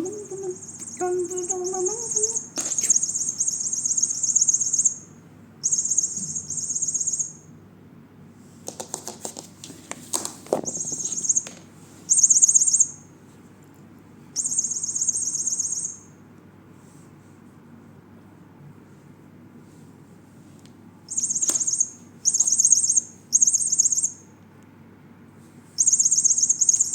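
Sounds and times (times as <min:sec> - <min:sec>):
electronic chirping toy: 0:00.0 - 0:07.4, 0:14.4 - 0:16.1, 0:21.1 - 0:24.2, 0:25.8 - 0:26.9.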